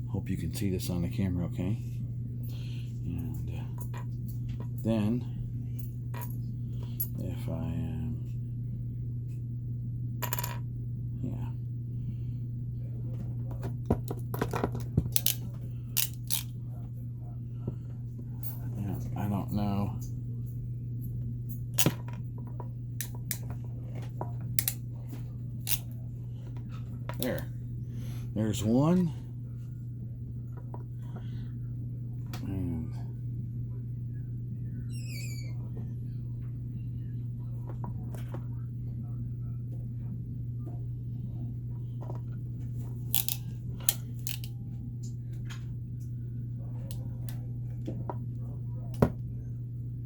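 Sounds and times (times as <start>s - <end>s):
steady low hum: 0.0s - 50.0s
clicks of tools and connectors: 15.1s - 15.4s, 16.0s - 16.5s, 24.6s - 24.8s, 25.7s - 25.9s, 43.1s - 44.5s.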